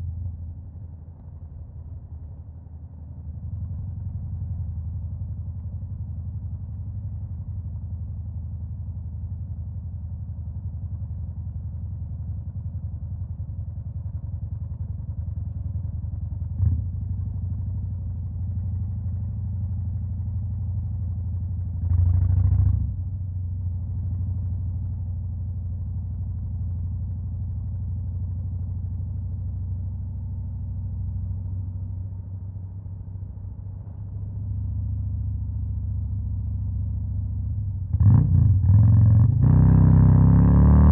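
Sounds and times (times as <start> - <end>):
motorcycle engine idling: 0.1 - 22.4.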